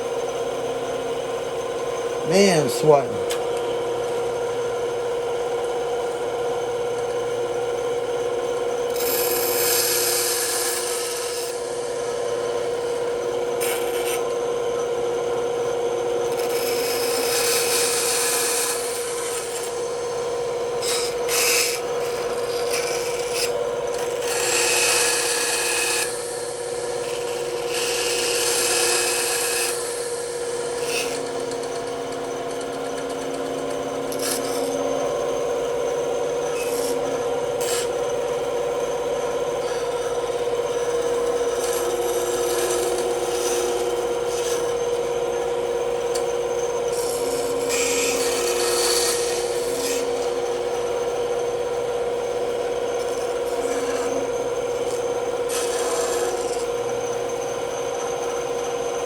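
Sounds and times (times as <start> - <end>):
bandsaw humming: 1.8 - 4.6, 8.8 - 14.4, 16.2 - 58.6
saw blade cutting wood: 2.2 - 3.2, 8.9 - 12.8, 13.6 - 14.3, 16.2 - 20.0, 20.8 - 38.2, 39.5 - 45.0, 46.1 - 51.0, 53.0 - 56.9.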